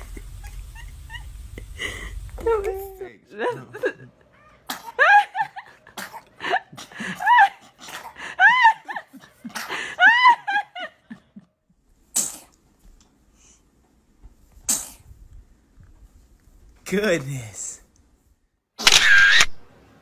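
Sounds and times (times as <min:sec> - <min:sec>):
baby sneezing: 0:04.6 - 0:05.0, 0:06.0 - 0:06.3, 0:12.1 - 0:12.6, 0:14.6 - 0:15.1
baby squealing: 0:18.8 - 0:19.5.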